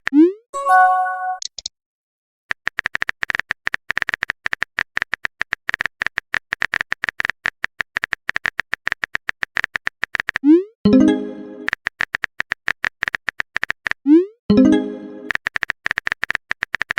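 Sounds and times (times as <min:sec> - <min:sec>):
phone keyboard key clicks: 0:15.3 - 0:16.9.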